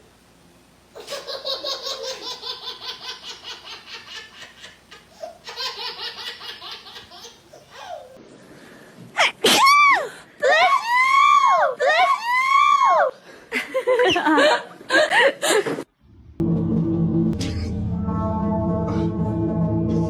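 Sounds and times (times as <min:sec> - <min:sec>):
rapid laughter: 0:01.0 - 0:08.1.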